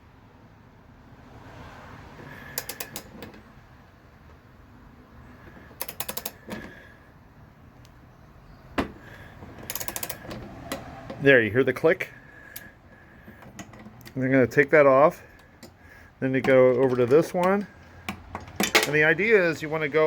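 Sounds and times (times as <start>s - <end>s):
torque wrench ratchet clicks: 2.5s - 3.1s, 5.8s - 6.6s, 9.6s - 10.9s.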